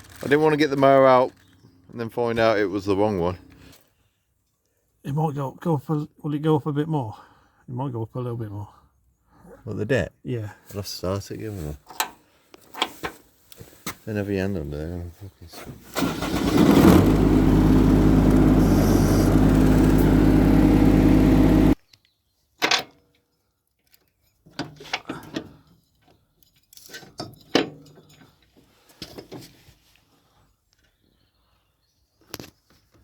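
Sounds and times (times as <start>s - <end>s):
ride-on mower engine running: 16.0s - 21.8s
tools and parts clinking: 22.6s - 29.4s.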